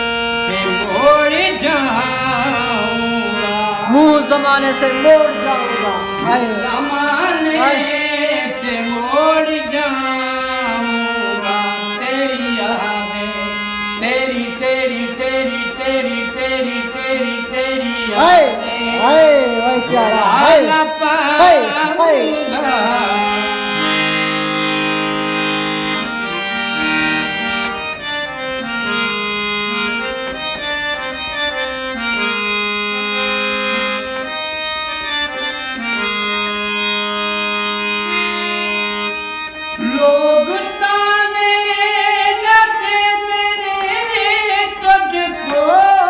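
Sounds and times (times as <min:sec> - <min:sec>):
instrumental folk melody: 0:00.0 - 0:46.0
person singing: 0:00.4 - 0:24.4, 0:39.8 - 0:46.0.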